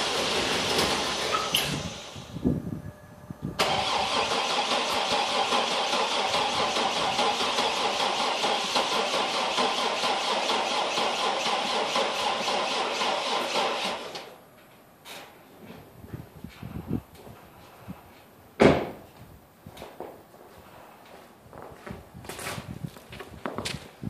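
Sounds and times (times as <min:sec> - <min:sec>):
starter cranking engine: 0:03.6 - 0:14.3.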